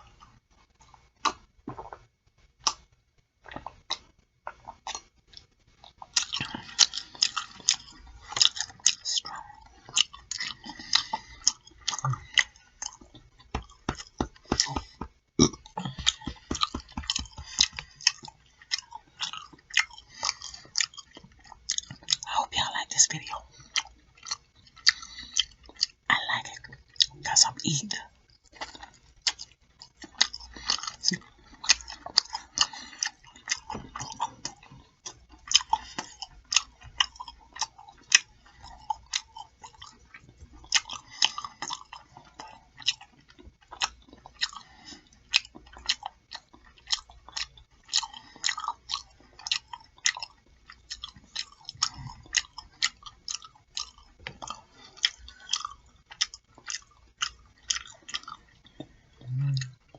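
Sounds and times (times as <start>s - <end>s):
wet chewing and lip-smacking: 0.2s - 59.9s.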